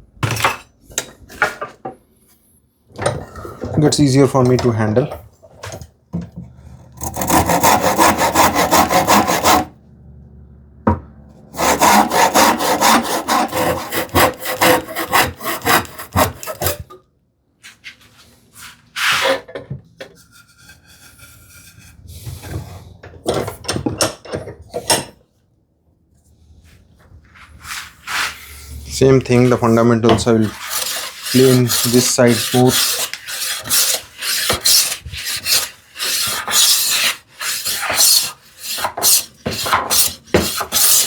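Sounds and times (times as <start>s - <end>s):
hand saw cutting wood: 6.8s - 9.8s, 11.5s - 16.9s, 20.2s - 22.2s, 29.3s - 41.0s
wood knocks and scrapes: 29.3s - 41.0s.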